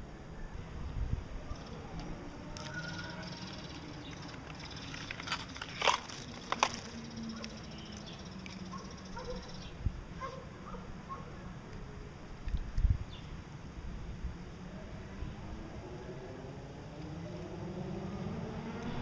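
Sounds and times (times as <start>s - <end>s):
soft bird call notes: 2.6s - 5.0s.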